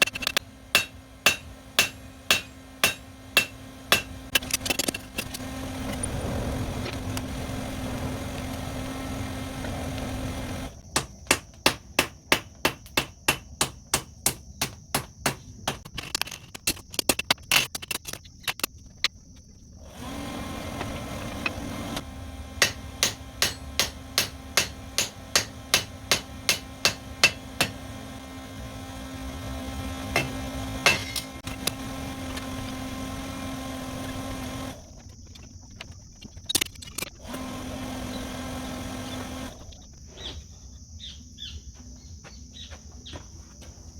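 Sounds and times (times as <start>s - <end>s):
steady low hum: 0.0s - 15.9s, 18.7s - 43.9s
hammer striking metal: 0.3s - 4.5s, 10.9s - 15.8s, 22.6s - 27.8s, 30.1s - 31.4s.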